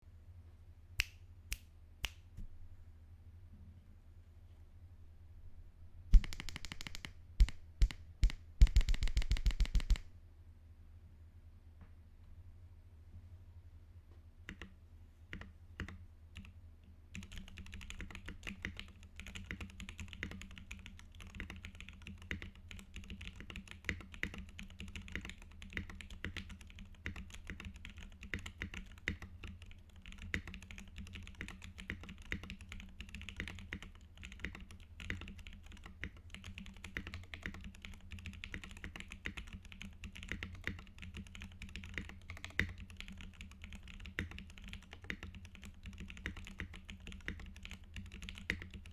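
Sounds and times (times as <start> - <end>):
mechanical keyboard typing: 6.1 - 10.1, 14.5 - 14.7, 15.3 - 16.5, 17.2 - 48.9.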